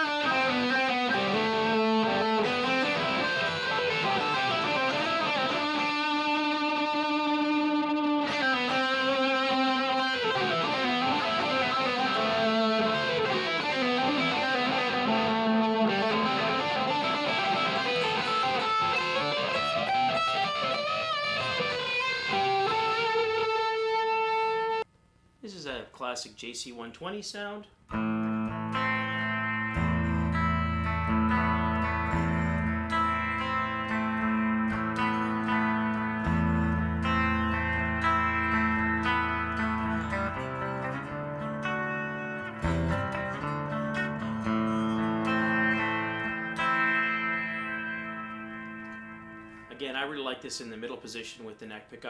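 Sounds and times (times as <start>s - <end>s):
overdriven electric guitar lead: 0.0s - 24.8s, 27.9s - 49.7s.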